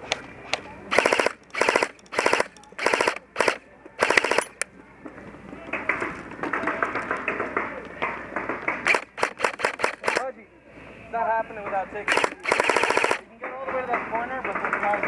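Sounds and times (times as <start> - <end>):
airsoft gun full-auto bursts: 0.9 - 4.5, 8.8 - 10.3, 12.1 - 13.3
scattered airsoft fire: 0.9 - 4.5, 8.8 - 10.3, 12.1 - 13.2.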